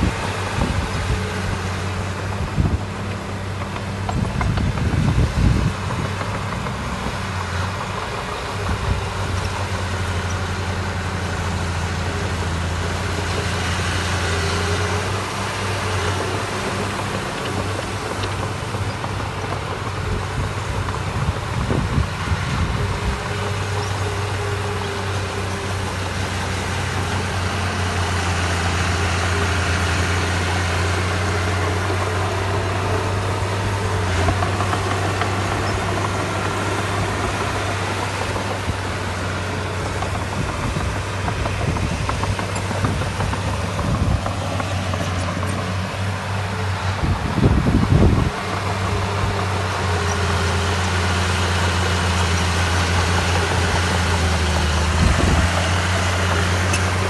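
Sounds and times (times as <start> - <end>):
diesel engine humming: 0.0 - 57.0.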